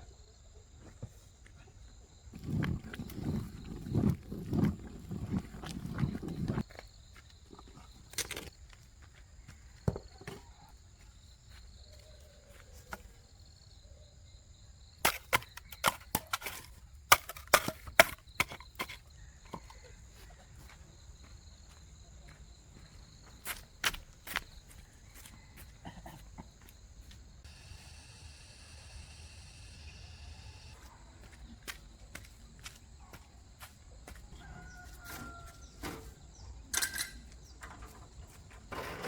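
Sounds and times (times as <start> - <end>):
insects droning: 0.0 - 39.0.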